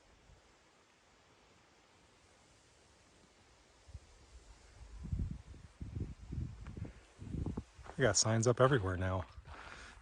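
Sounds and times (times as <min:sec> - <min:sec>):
faint steady hiss: 0:00.0 - 0:10.0.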